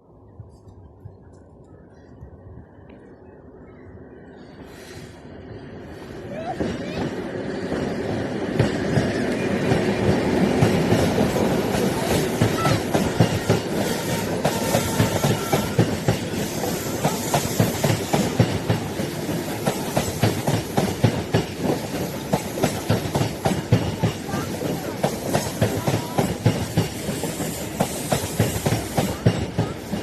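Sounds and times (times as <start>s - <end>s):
train rolling rumble: 0.0s - 30.0s
train wheels clattering over rail joints: 6.6s - 30.0s.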